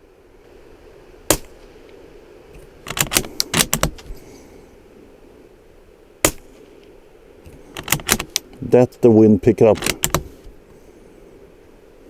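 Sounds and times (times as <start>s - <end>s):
wind noise: 0.0s - 12.0s
suppressed gunshot: 1.3s - 1.6s, 6.2s - 6.6s
rifle bolt clicking: 2.6s - 4.1s, 7.7s - 8.5s, 9.8s - 10.3s.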